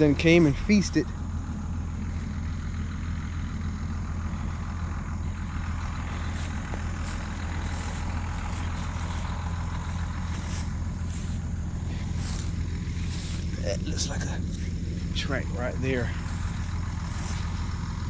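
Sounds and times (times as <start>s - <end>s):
vehicle engine idling: 0.0s - 18.0s
soft rustles: 5.3s - 13.6s.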